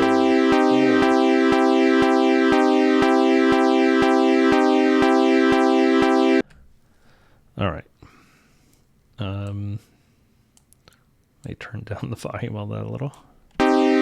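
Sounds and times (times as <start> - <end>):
synthesizer playing sustained chords: 0.0 - 6.4, 13.6 - 14.0.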